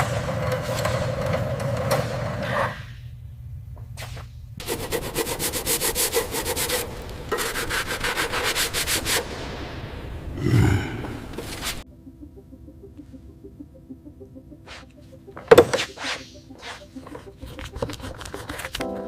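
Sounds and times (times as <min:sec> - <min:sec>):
hand sanding metal: 0:04.6 - 0:09.3.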